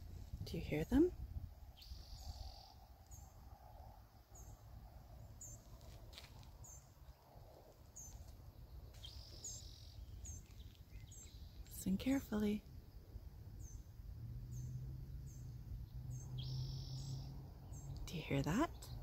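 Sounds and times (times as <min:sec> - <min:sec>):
low wind rumble: 0:00.0 - 0:19.0
bird chirping: 0:01.7 - 0:05.8, 0:06.6 - 0:12.6, 0:13.6 - 0:19.0
buzzy bird trill: 0:16.1 - 0:18.7.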